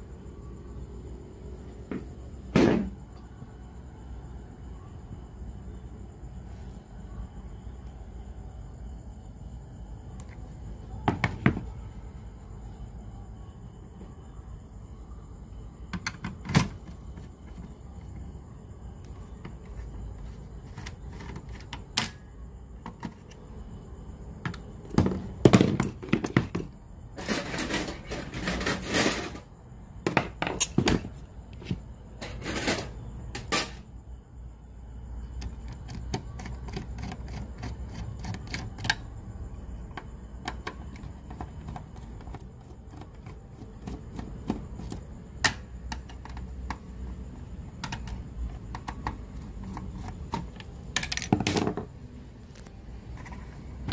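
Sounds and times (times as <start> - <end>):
scraping on workbench: 27.2 - 29.5, 31.6 - 33.8
small parts clicking and tapping: 39.9 - 46.9, 47.8 - 51.9.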